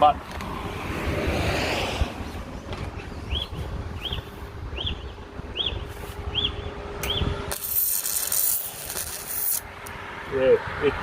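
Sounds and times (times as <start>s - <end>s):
welder arc sizzling: 7.0s - 9.7s.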